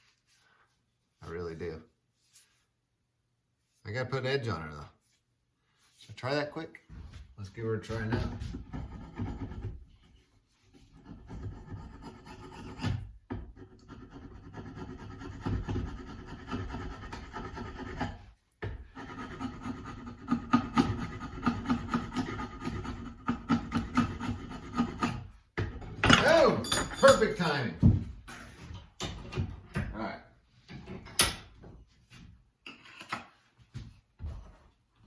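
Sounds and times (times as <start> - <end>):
hand file scraping: 7.9 - 25.4.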